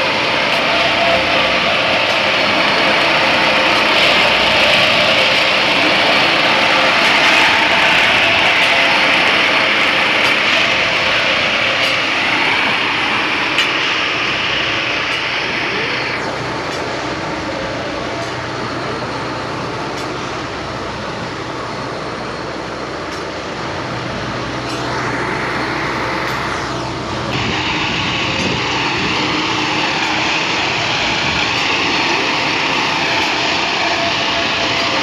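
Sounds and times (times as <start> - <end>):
loud hissing: 0.0 - 35.0
machine engine hum: 0.0 - 35.0.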